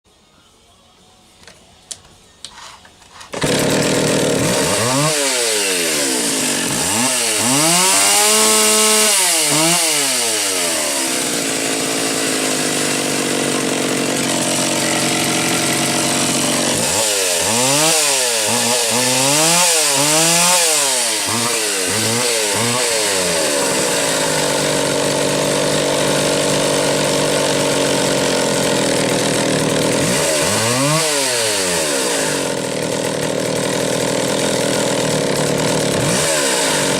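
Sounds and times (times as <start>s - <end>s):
chainsaw idling and revving: 3.2s - 36.9s.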